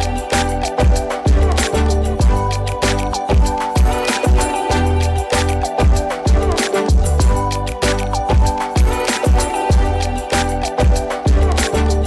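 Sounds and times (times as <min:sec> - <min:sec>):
deep kick drum: 0:00.0 - 0:01.6, 0:02.2 - 0:02.6, 0:03.3 - 0:04.6, 0:05.8 - 0:07.6, 0:08.3 - 0:09.9, 0:10.8 - 0:11.6
background music with beat: 0:00.0 - 0:12.0.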